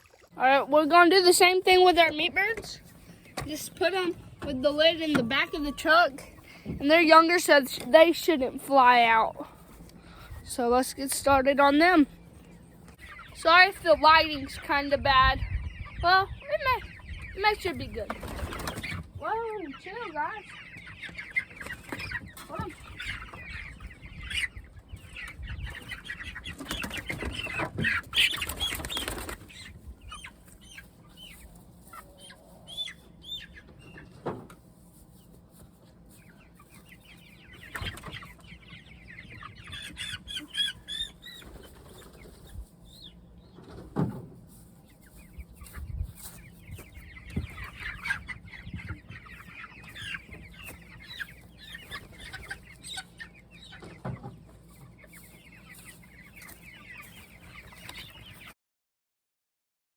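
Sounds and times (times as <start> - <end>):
chickens clucking and cheeping: 0.0 - 58.6
wing flapping: 18.1 - 19.0, 28.3 - 29.6.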